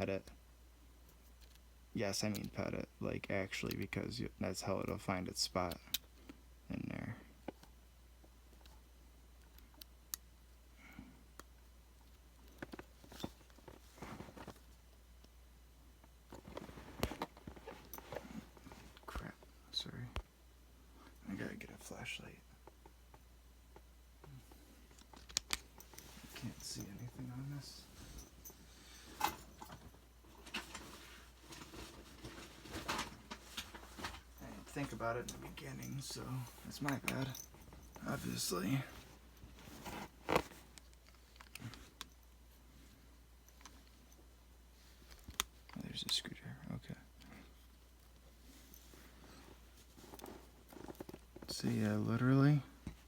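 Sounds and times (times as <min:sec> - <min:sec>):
low steady hum: 0:00.0 - 0:53.0
small clicks and taps of parts: 0:01.1 - 0:02.6, 0:24.9 - 0:26.0, 0:40.7 - 0:42.2, 0:45.1 - 0:46.2.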